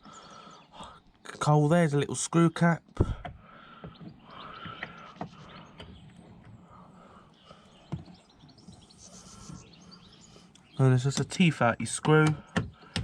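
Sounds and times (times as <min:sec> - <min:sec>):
faint bird chirps: 0:02.4 - 0:11.2.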